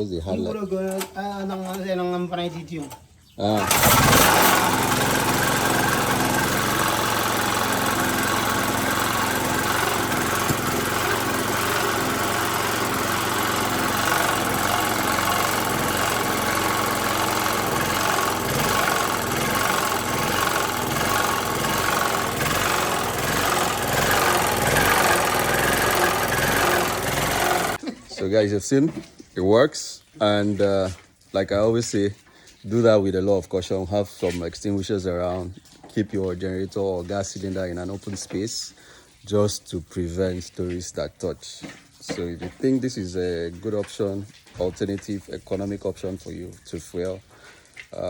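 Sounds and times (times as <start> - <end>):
small generator engine running: 3.6 - 27.8.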